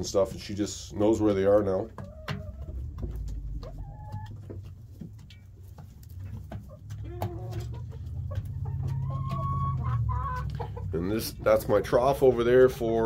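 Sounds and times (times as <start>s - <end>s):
low steady hum: 0.0s - 7.0s
chickens clucking: 0.0s - 13.0s.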